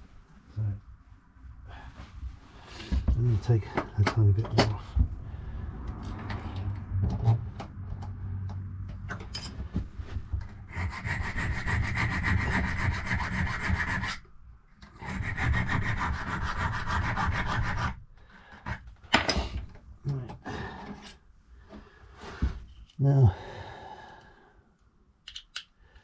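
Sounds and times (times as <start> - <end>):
metal file scraping a key: 10.7 - 14.2.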